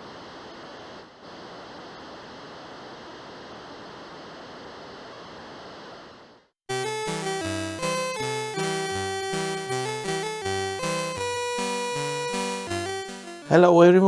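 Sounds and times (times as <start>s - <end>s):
steady static hiss: 0.0s - 13.8s.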